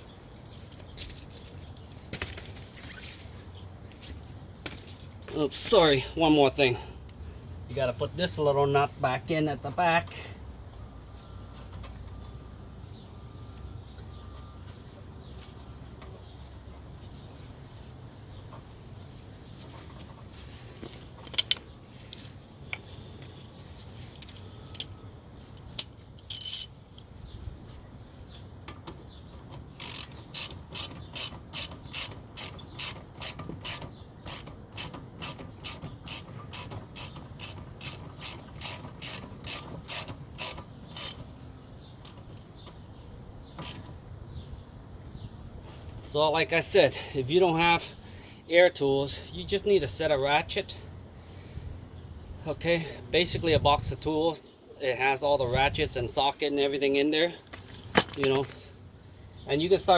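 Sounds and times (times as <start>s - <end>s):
ratchet wrench clicking: 25.7s - 26.7s, 29.7s - 41.3s, 43.6s - 43.9s.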